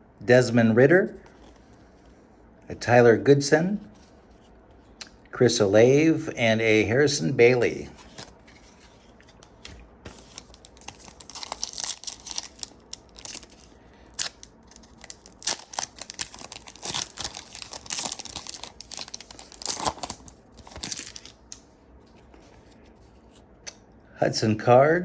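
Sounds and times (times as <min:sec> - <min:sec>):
cards rustling: 0:07.8 - 0:21.4
foil wrapper tearing and crinkling: 0:10.1 - 0:21.4.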